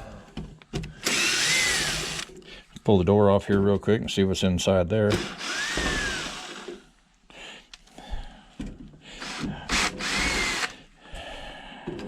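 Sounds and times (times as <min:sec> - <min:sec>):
cordless drill motor whirring: 0:01.0 - 0:02.3, 0:05.1 - 0:06.8, 0:09.2 - 0:10.8.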